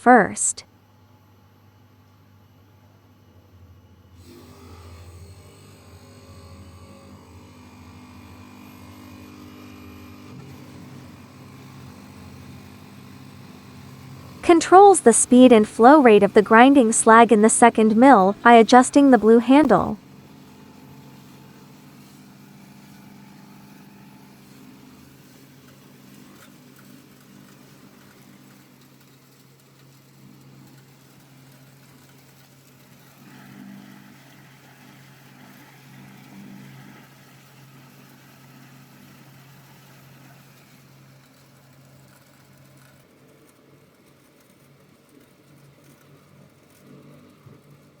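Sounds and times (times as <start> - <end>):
electric grinding mill humming: 4.2 - 14.4.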